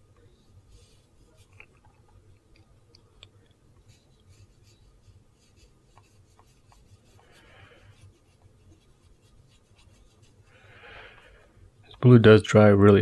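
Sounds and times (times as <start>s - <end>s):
paintbrush strokes on paper: 0.5s - 2.0s, 3.8s - 10.7s.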